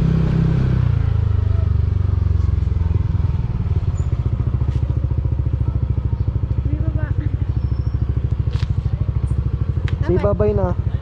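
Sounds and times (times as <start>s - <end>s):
motorcycle engine idling: 0.0s - 11.0s.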